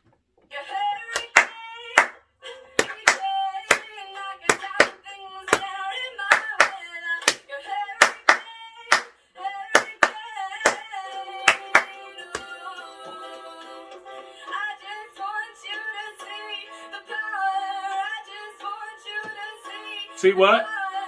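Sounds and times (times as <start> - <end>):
girl singing on recording: 0.5 - 21.0
hand claps: 1.1 - 2.2, 2.8 - 9.1, 9.7 - 12.6.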